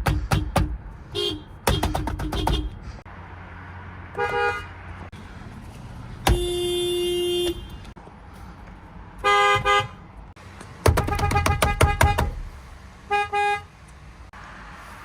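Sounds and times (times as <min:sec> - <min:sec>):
car horn beeping: 0:00.4 - 0:02.8, 0:04.2 - 0:04.8, 0:06.2 - 0:08.0, 0:09.2 - 0:10.0, 0:10.9 - 0:12.4, 0:13.1 - 0:13.7.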